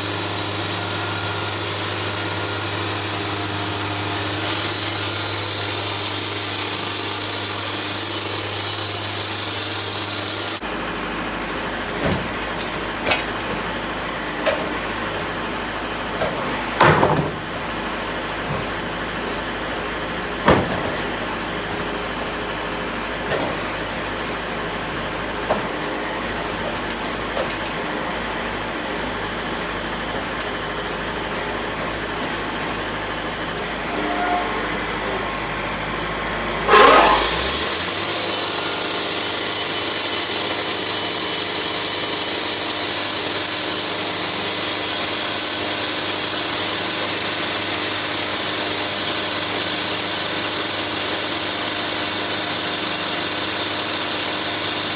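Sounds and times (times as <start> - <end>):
saw hissing through log: 0.0 - 10.6, 36.6 - 54.9
sawmill running: 0.0 - 10.6, 33.8 - 54.9.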